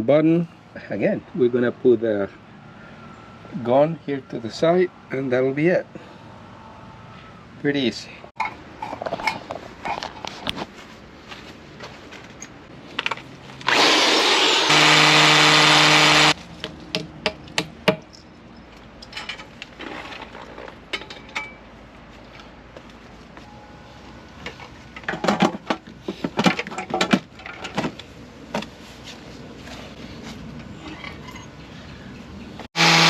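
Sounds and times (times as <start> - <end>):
power drill driving screws: 13.6 - 16.4, 32.8 - 33.0.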